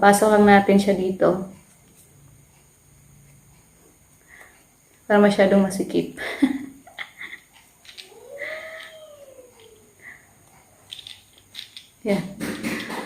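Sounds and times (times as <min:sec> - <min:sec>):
cat meowing: 0:08.0 - 0:10.0.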